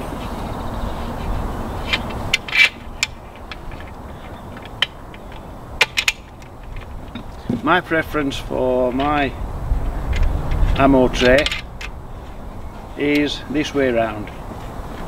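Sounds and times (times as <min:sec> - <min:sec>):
hardware clicks and knocks: 0:01.8 - 0:07.8, 0:10.1 - 0:12.0.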